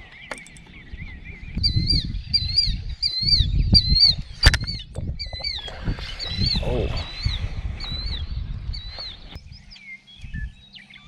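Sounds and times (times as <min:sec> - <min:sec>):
bird whistling calls: 0:00.0 - 0:11.0
sharp click: 0:04.4 - 0:04.8.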